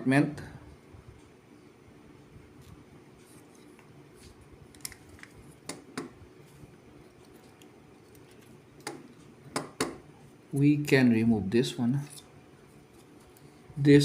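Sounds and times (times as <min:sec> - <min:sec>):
faint background hum: 0:00.0 - 0:14.0.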